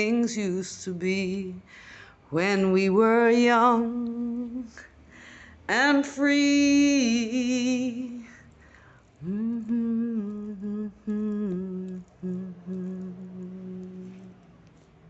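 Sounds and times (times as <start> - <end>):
person singing with vibrato: 5.7 - 8.5, 9.2 - 14.6
person humming slow tune: 9.2 - 14.6.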